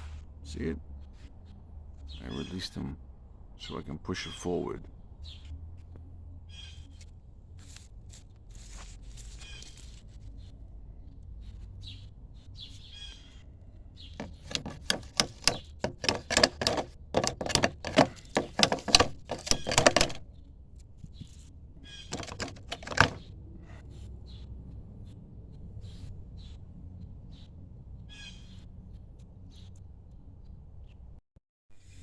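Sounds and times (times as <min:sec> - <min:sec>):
handrail spindles knocking and clicking: 0:14.2 - 0:20.2, 0:22.1 - 0:23.2.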